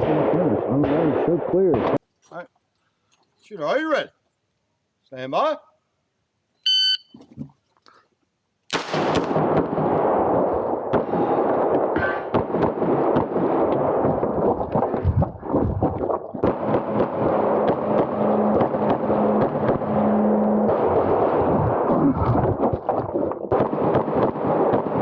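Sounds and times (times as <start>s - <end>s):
pistol shots: 8.7s - 14.4s, 16.4s - 21.9s, 23.5s - 25.0s.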